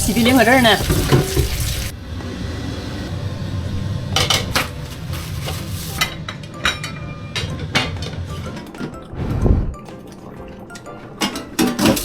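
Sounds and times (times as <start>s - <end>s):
dishes clinking at sink: 0.1s - 1.8s, 11.2s - 12.0s.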